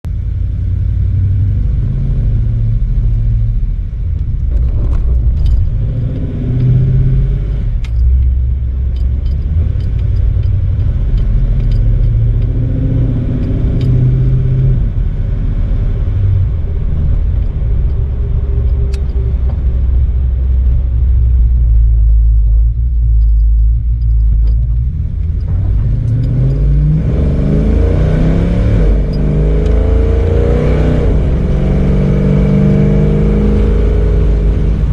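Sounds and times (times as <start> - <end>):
car engine rumbling: 0.0 - 34.9
light clicks and rattles: 4.1 - 14.5, 16.9 - 27.1.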